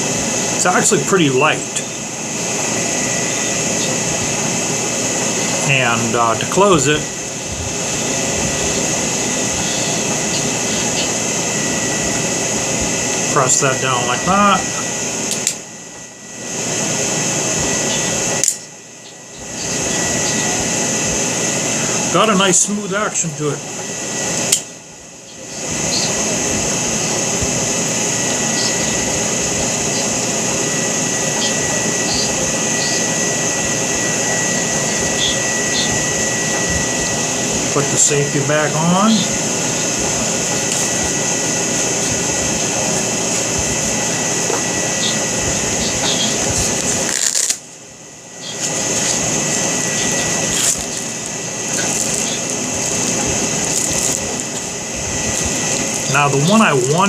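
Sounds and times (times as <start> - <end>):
mechanical rushing noise: 0.0 - 15.3
loud background hiss: 0.0 - 57.0
thin high whine: 0.0 - 57.0.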